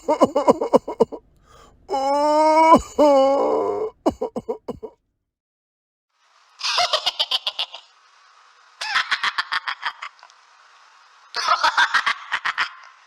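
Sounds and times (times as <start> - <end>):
cartoon laughter: 0.0 - 1.2, 4.0 - 4.9, 6.6 - 7.9, 8.8 - 10.3, 11.4 - 13.0.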